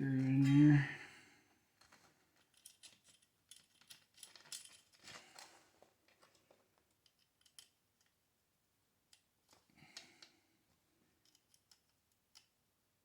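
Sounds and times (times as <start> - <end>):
small metal parts clicking: 1.8 - 8.2, 11.2 - 12.6.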